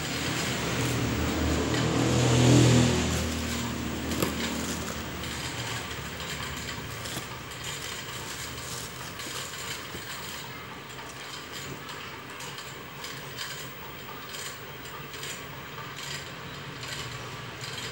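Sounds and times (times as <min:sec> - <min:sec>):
cardboard box handled: 0:02.8 - 0:10.4.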